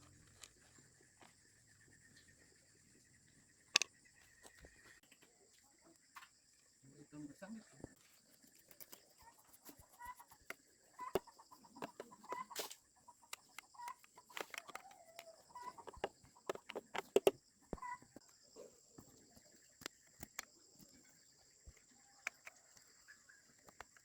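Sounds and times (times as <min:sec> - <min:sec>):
chickens clucking: 0:09.1 - 0:19.8
sharp clicks and knocks: 0:10.3 - 0:12.6, 0:13.3 - 0:17.8, 0:19.8 - 0:20.5.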